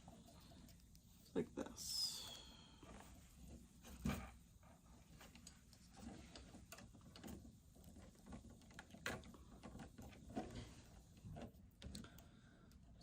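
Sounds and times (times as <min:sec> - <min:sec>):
plastic parts and cables rustling: 0:02.7 - 0:13.0.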